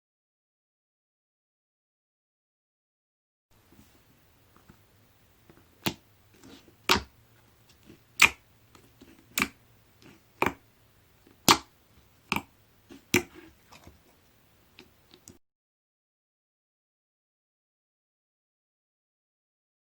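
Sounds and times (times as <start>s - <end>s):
slime squishing: 5.4s - 10.6s, 11.2s - 14.1s
slime popping: 7.8s - 8.4s, 12.3s - 13.4s.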